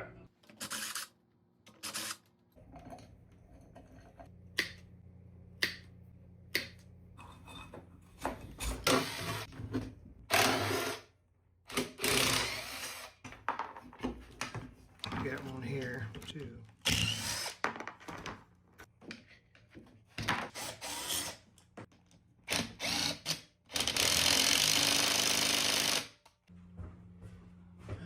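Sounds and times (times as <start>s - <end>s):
power drill bursts: 22.8s - 26.1s.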